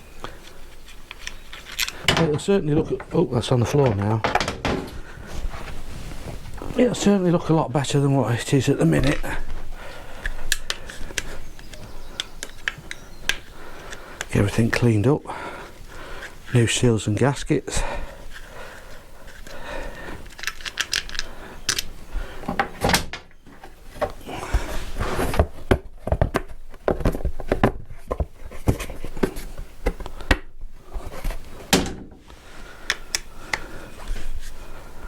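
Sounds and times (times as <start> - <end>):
metal parts and tools clinking: 20.2 - 21.9.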